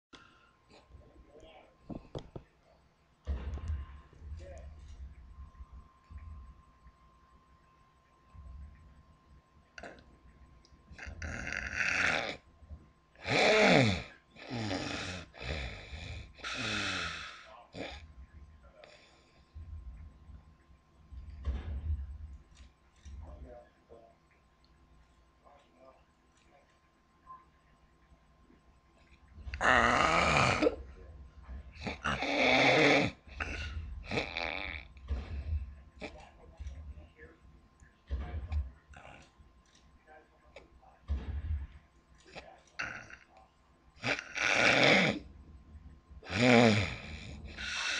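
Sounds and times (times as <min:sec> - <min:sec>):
woman snoring heavily: 0:11.0 - 0:12.4, 0:13.2 - 0:18.0, 0:29.6 - 0:30.8, 0:31.8 - 0:34.9, 0:44.0 - 0:45.2, 0:46.3 - 0:47.9.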